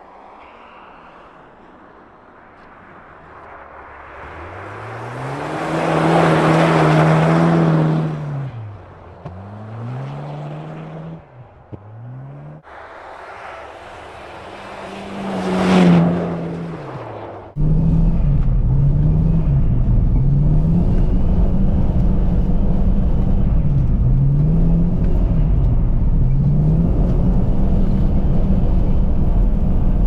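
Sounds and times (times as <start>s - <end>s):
car engines revving: 0.0s - 30.0s.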